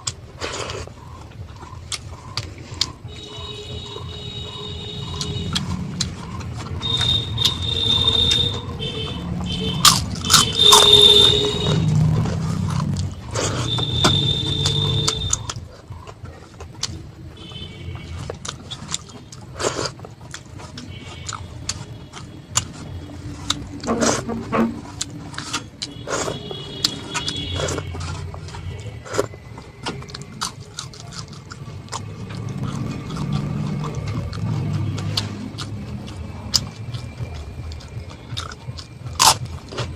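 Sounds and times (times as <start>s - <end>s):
chewing with mouth clicks: 0.0s - 39.9s.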